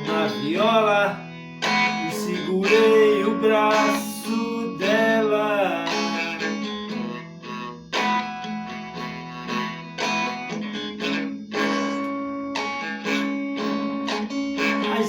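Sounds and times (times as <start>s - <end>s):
acoustic guitar strumming chords: 0.0s - 15.0s.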